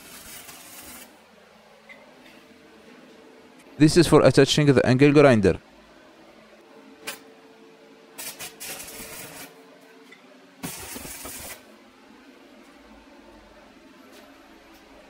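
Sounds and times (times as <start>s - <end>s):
hissing bursts: 10.6s - 11.6s.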